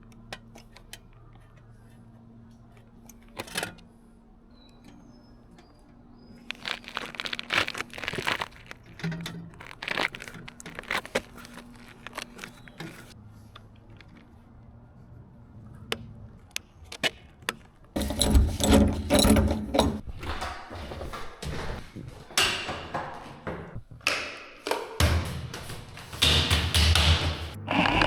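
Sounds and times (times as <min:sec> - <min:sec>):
rattling and rumbling handling noise: 0:06.4 - 0:13.2, 0:17.6 - 0:22.2
sharp clicks knocks and scrapes: 0:16.9 - 0:21.8.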